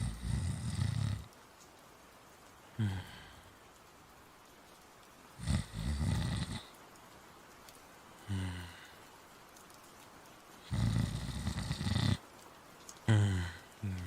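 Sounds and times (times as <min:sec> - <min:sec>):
person imitating snoring: 0:00.0 - 0:01.3, 0:02.8 - 0:03.4, 0:05.4 - 0:06.7, 0:08.2 - 0:08.9, 0:10.6 - 0:12.2, 0:13.1 - 0:14.0.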